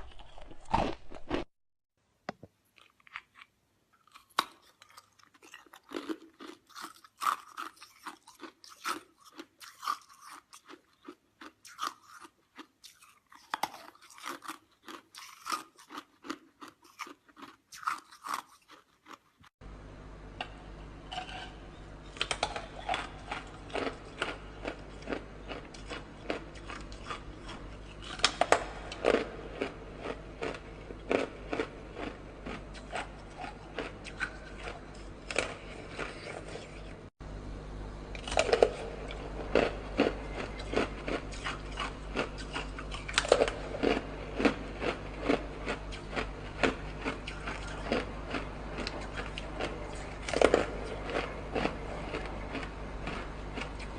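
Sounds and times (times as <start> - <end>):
ice being crunched and chewed: 0.0 - 1.5, 2.8 - 19.4, 22.2 - 36.9, 38.2 - 53.9
steady low hum: 19.6 - 53.9.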